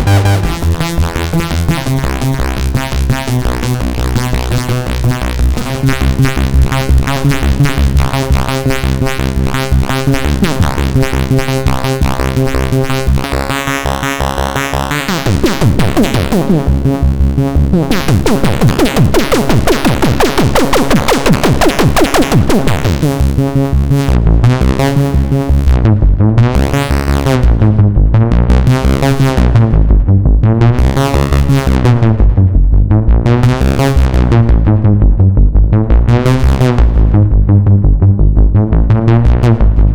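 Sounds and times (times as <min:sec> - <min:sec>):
falling synth pitch sweeps: 0:00.0 - 0:00.8
synthesizer bass pattern: 0:00.0 - 0:39.9.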